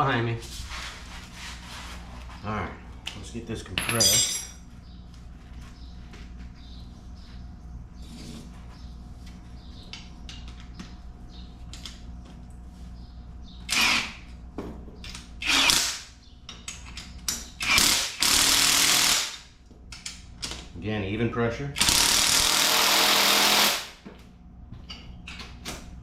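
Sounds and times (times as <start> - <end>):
power tool bursts: 13.7 - 14.2, 15.4 - 16.1, 17.6 - 19.4, 21.8 - 24.0.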